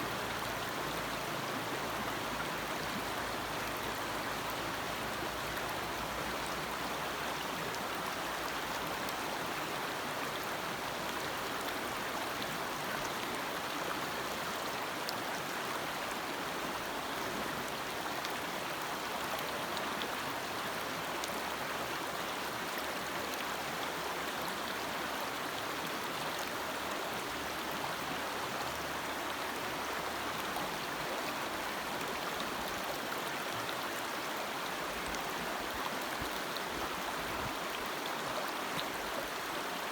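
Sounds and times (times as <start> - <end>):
stream flowing over stones: 0.0 - 39.9.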